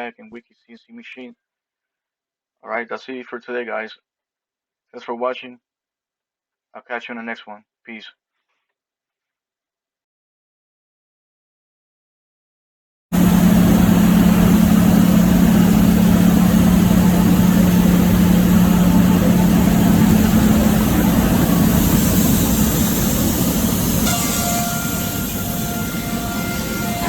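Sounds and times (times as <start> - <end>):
faint steady tones: 13.2 - 27.0
loud machine hum: 13.2 - 27.0.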